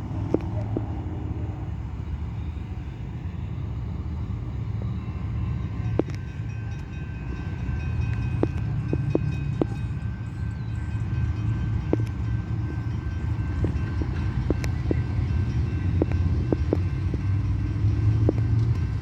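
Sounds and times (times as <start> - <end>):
freight train rumble: 0.0 - 19.0
sharp clicks: 16.0 - 17.2.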